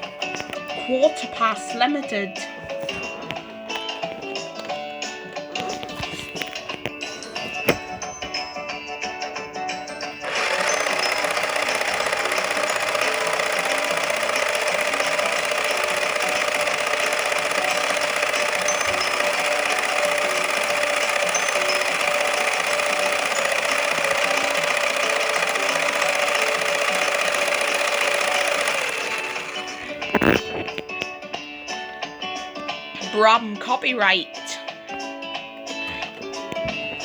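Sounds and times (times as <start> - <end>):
toy car motor whirring: 10.2 - 30.9.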